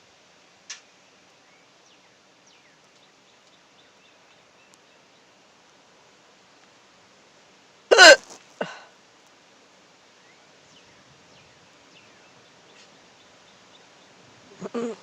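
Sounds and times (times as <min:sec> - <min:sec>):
person hiccuping: 0:07.9 - 0:08.8, 0:14.6 - 0:15.0.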